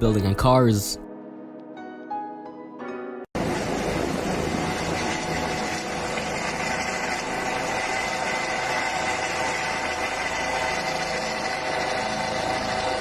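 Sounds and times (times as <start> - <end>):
helicopter engine with high whine: 3.4 - 13.0.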